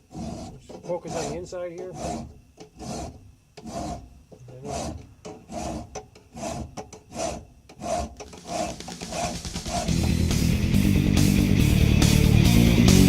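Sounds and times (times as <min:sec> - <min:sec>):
metal file rasping on steel: 0:00.0 - 0:10.2.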